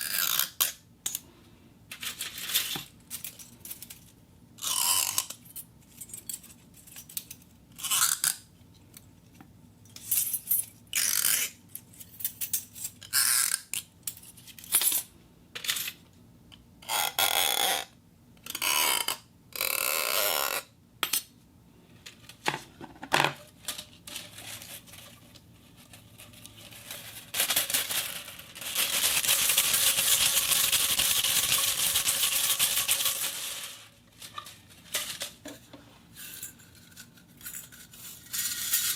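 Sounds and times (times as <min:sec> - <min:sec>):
metallic rattles and scrapes: 0:23.4 - 0:38.9.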